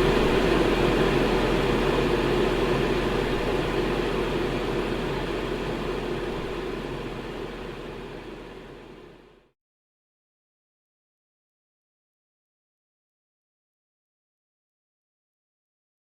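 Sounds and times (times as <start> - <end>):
electric fan running: 0.0 - 9.4.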